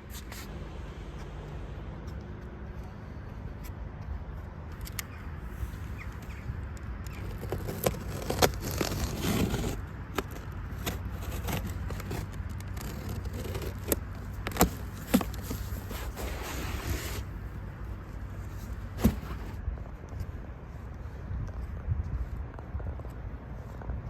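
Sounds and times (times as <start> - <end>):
packaging scraping and crackling: 7.1 - 17.4.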